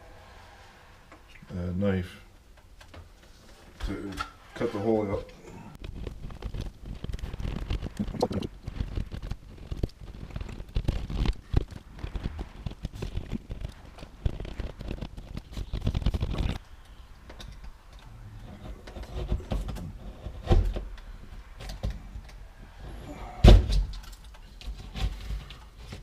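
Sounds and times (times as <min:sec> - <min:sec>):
scrapes and knocks: 0:17.2 - 0:26.0.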